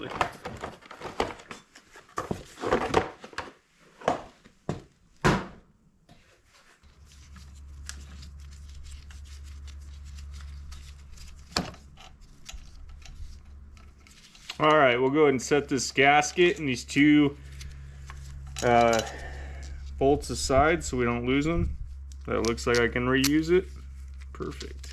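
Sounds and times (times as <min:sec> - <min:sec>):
plastic parts knocking and rattling: 0:00.0 - 0:04.2
steady low hum: 0:06.8 - 0:24.9.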